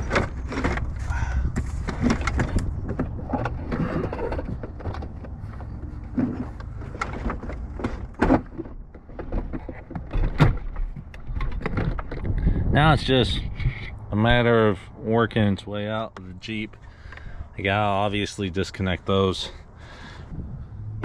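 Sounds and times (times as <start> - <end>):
plastic parts clicking and knocking: 0.0 - 12.5.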